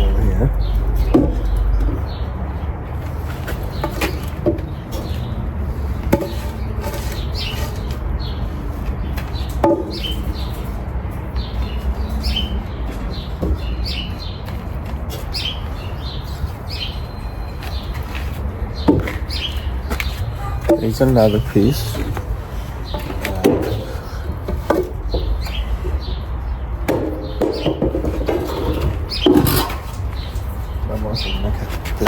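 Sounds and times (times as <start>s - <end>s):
small birds chirping: 0.0s - 2.7s, 3.3s - 32.0s
wooden posts knocking: 0.6s - 2.2s, 3.5s - 5.2s, 6.0s - 6.9s, 9.2s - 10.6s, 18.8s - 22.3s, 22.9s - 26.2s, 26.8s - 30.3s.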